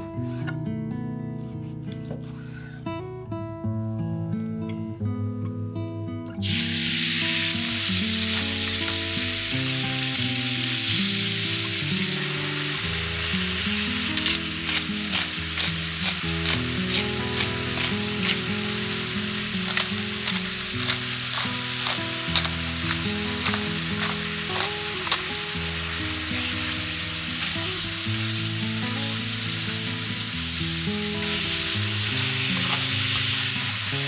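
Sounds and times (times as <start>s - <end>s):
food sizzling in a frying pan: 6.4s - 34.0s
spatula tapping and scraping pan: 14.2s - 18.5s, 19.6s - 25.3s.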